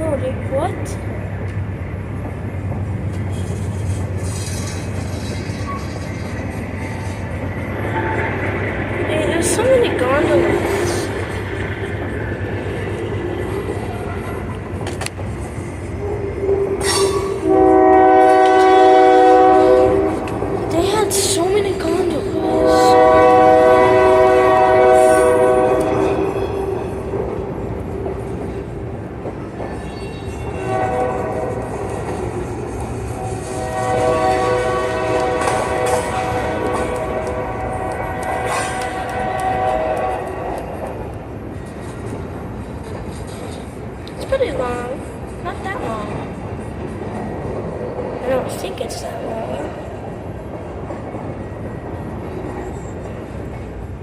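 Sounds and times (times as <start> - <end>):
freight train rumbling past: 0.0 - 54.0
train horn chord: 17.1 - 20.3, 22.3 - 26.3, 30.6 - 31.8, 33.1 - 40.6.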